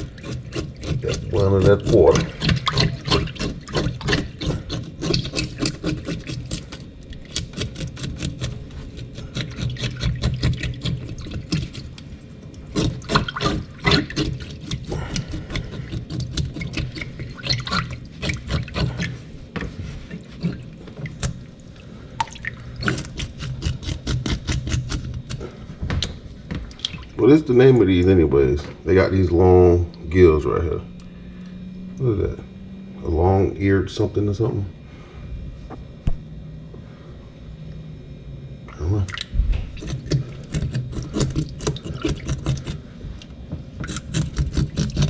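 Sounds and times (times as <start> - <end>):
scraping fish scales: 0.0 - 25.6, 39.8 - 43.0, 43.8 - 45.0.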